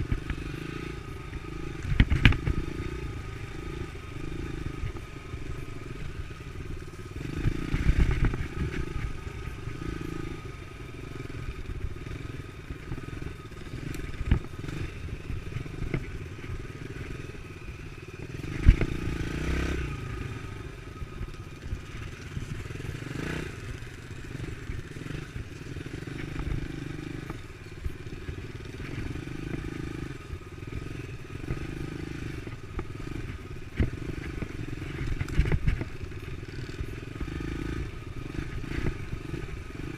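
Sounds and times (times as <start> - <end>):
dirt bike engine running: 0.0 - 39.9.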